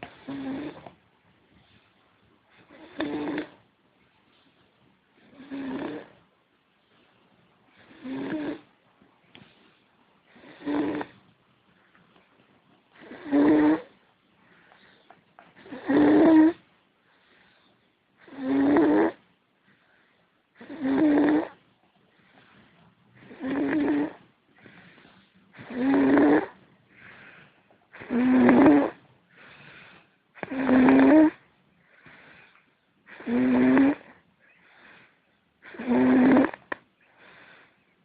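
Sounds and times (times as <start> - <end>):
person snoring: 0.0 - 0.9, 2.6 - 3.6, 5.2 - 6.2, 7.8 - 8.7, 10.3 - 11.2, 13.0 - 14.0, 15.6 - 16.6, 18.2 - 19.2, 20.6 - 21.6, 23.2 - 24.2, 25.6 - 27.2, 27.9 - 29.0, 30.4 - 31.5, 33.1 - 34.2, 35.6 - 36.8
faint breaths: 0.0 - 38.0.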